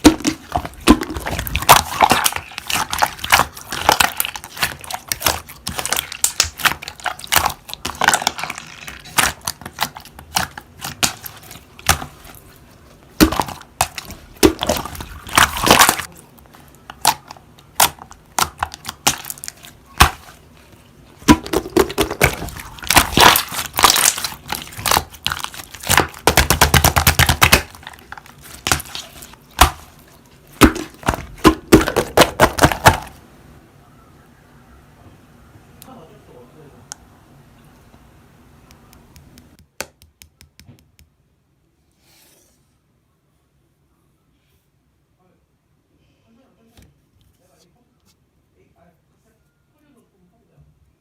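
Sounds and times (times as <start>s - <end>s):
slime squeezed by hand: 21.2s - 33.2s.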